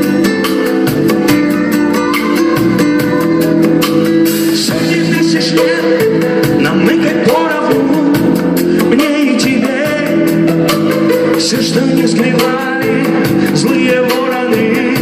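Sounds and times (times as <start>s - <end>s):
instrumental backing music: 0.0s - 15.0s
steady drum beat: 0.0s - 15.0s
man singing pop song: 4.5s - 15.0s.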